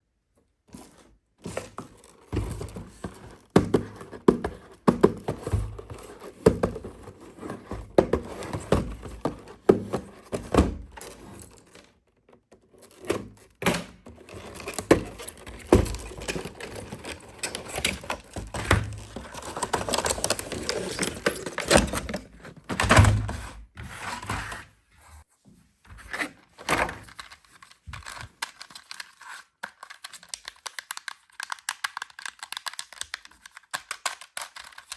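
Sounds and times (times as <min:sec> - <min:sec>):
packaging rustling and crinkling: 0:14.2 - 0:22.7, 0:26.9 - 0:34.9.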